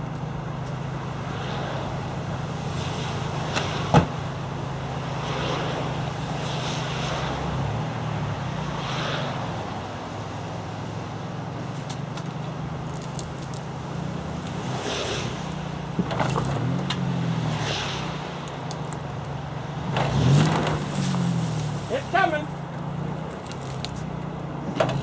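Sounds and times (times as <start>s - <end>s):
truck engine running: 0.0s - 25.0s
hissy rustles: 12.8s - 25.0s.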